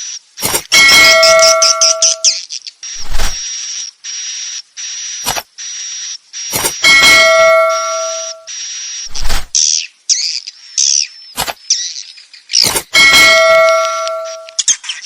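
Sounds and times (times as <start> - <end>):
swiftlet chirrs and twittering: 0.4 - 3.8, 6.4 - 9.7, 12.6 - 14.7
ringing tone: 0.7 - 2.4, 6.6 - 8.5, 13.0 - 14.6.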